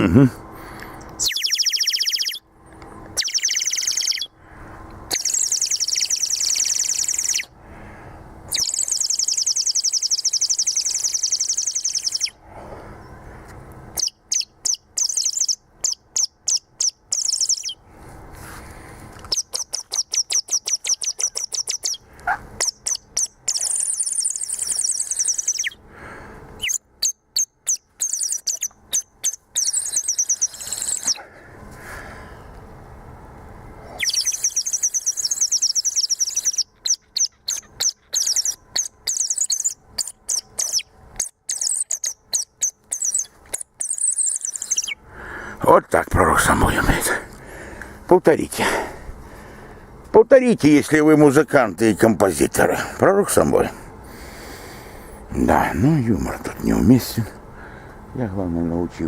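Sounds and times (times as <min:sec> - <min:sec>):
man whistling bird-like trills: 0:01.2 - 0:02.4, 0:03.2 - 0:04.3, 0:05.1 - 0:07.5, 0:08.5 - 0:12.4, 0:14.0 - 0:17.8, 0:19.3 - 0:22.0, 0:22.6 - 0:25.8, 0:26.6 - 0:31.2, 0:34.0 - 0:40.9, 0:41.5 - 0:45.0.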